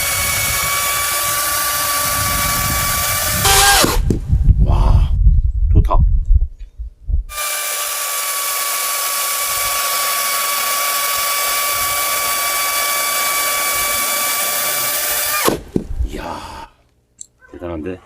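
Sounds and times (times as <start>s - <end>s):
electric chainsaw cutting log: 0.0s - 4.2s, 7.3s - 15.7s.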